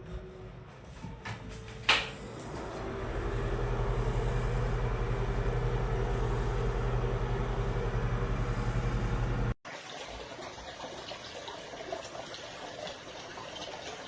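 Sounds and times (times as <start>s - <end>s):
low pulsing mechanical hum: 0.0s - 9.6s.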